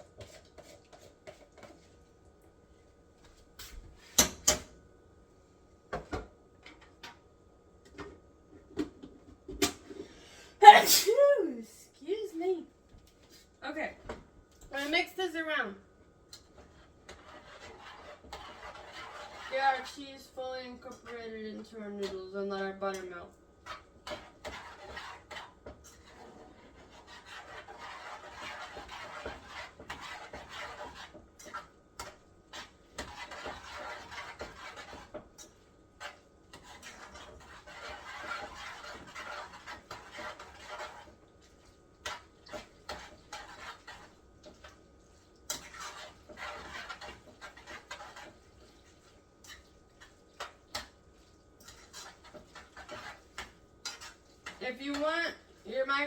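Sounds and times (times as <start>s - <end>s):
utensil scraping a pot: 0.0s - 1.9s, 16.4s - 56.0s.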